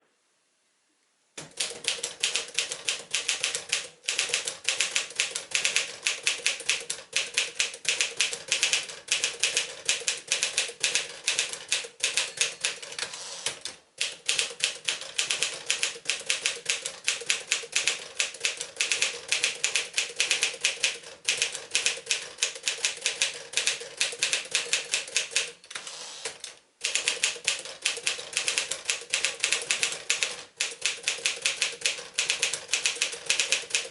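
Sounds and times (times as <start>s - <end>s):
manual typewriter typing: 1.4s - 25.6s, 26.2s - 33.9s.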